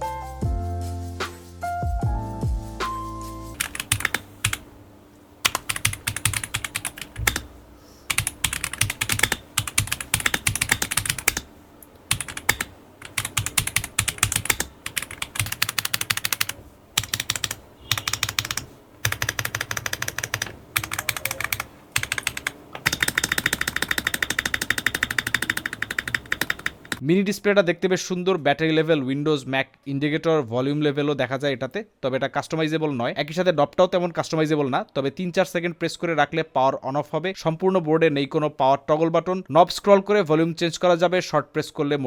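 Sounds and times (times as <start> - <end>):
mechanical keyboard key clacks: 12.1 - 27.0.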